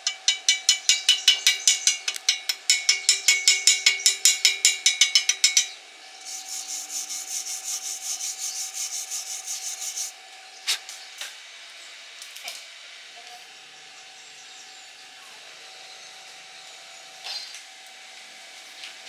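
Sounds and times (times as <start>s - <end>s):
chipping hammer tapping metal: 0.0s - 7.4s
wire brush scraping: 6.2s - 10.2s.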